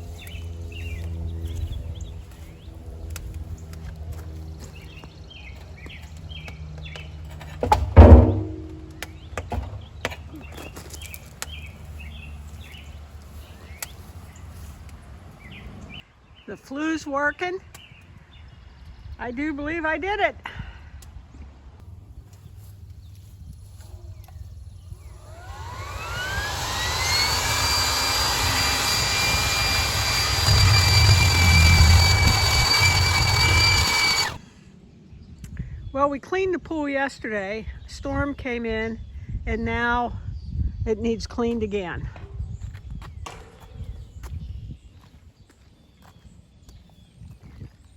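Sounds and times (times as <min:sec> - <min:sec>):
small birds chirping: 0:00.0 - 0:07.5, 0:08.9 - 0:16.7, 0:17.3 - 0:19.7, 0:37.8 - 0:47.9
steady low hum: 0:07.7 - 0:10.0, 0:21.2 - 0:34.4
motor whining: 0:25.0 - 0:34.4
low rumble: 0:25.6 - 0:34.4.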